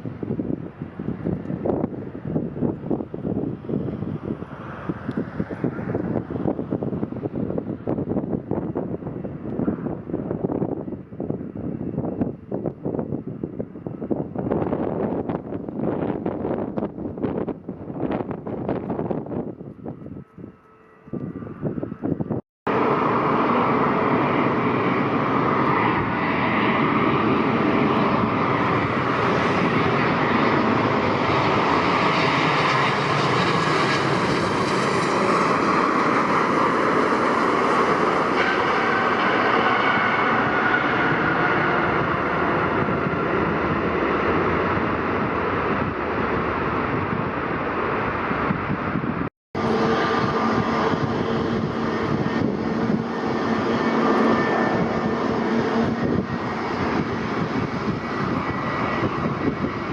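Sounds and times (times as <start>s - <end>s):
high whine: 0.0s - 59.9s
jet engines running: 0.0s - 59.9s.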